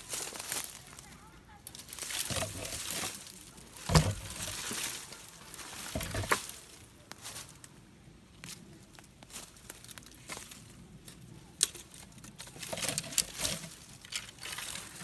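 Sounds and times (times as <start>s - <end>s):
knocks of objects being handled: 2.2s - 3.2s, 3.8s - 5.0s, 5.8s - 6.6s.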